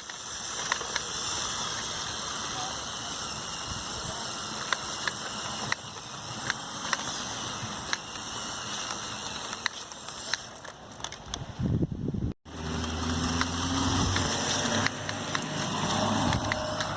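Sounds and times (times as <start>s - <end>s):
toy truck motor hissing: 0.0s - 11.5s, 12.5s - 16.9s
sharp clicks: 12.6s - 16.9s.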